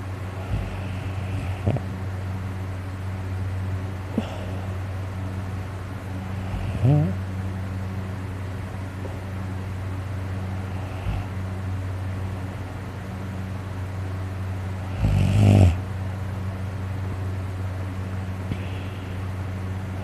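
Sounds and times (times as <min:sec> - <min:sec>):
steady low hum: 0:00.0 - 0:20.0
man snoring: 0:00.4 - 0:01.8, 0:06.3 - 0:07.2, 0:14.8 - 0:15.8.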